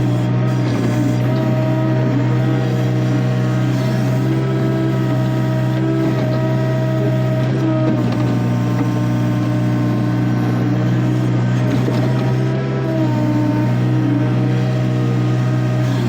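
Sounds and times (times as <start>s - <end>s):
excavator diesel engine running: 0.0s - 16.0s.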